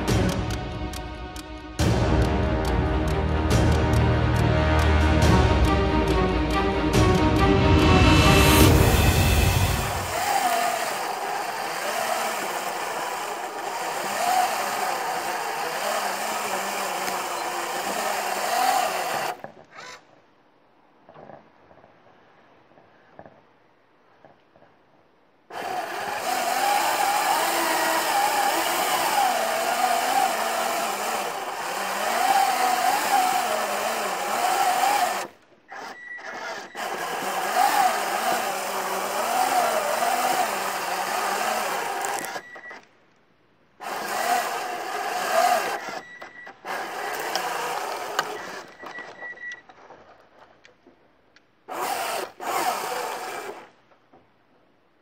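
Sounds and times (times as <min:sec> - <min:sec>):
small electric motors whirring: 0:09.0 - 0:20.0, 0:25.5 - 0:42.8, 0:43.8 - 0:49.6, 0:51.7 - 0:53.8.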